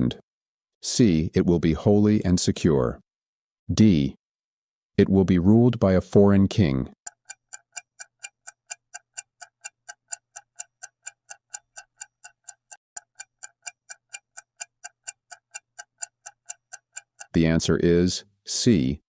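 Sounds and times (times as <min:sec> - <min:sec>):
clock-like timer ticking: 0:06.9 - 0:17.8.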